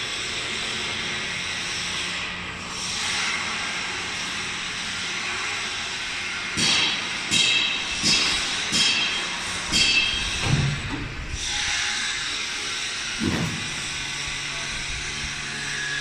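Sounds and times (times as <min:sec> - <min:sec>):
glass cutting machine hissing: 0:11.3 - 0:16.0.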